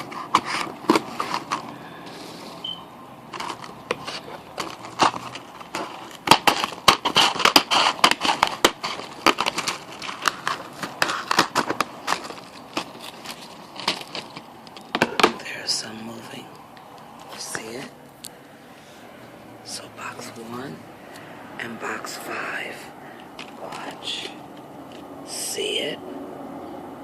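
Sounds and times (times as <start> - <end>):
cardboard tearing and crinkling: 0.0 - 1.8, 3.3 - 15.6.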